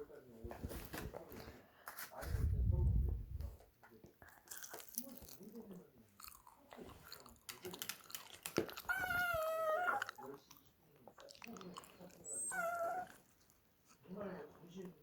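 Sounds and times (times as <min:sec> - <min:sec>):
crunchy chewing: 0:04.2 - 0:13.2.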